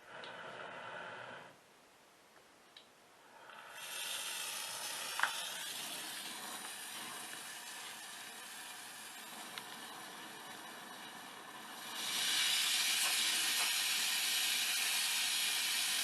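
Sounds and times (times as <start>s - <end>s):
gas hissing: 3.3s - 16.0s.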